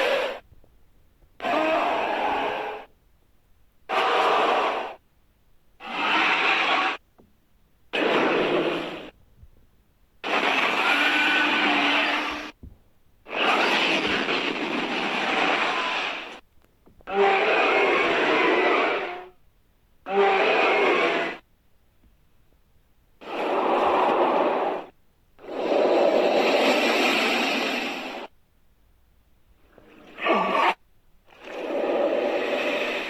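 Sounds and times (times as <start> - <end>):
voice growling roars: 1.4 - 2.9, 17.1 - 19.3, 30.0 - 30.8, 31.4 - 33.0.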